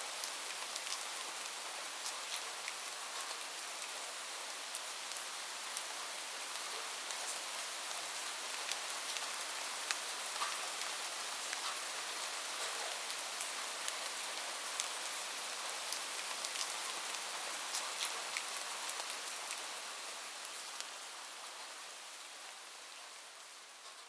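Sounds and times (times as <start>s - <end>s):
light rain falling: 0.0s - 24.0s.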